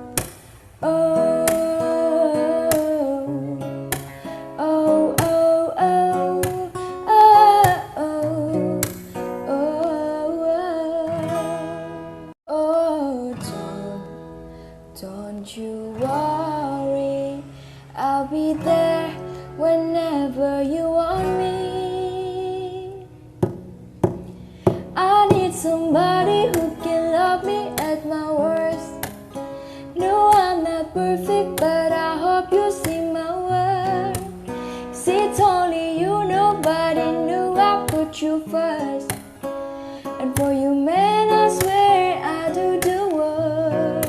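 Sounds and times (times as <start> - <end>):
plucked acoustic guitar: 0.0 - 44.0
person singing: 0.8 - 14.2, 24.9 - 29.1, 29.8 - 39.2, 40.0 - 44.0.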